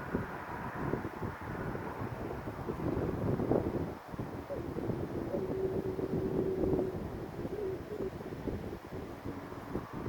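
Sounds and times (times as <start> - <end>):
distant road traffic rumble: 0.0 - 10.0
wind buffeting microphone: 0.0 - 10.0.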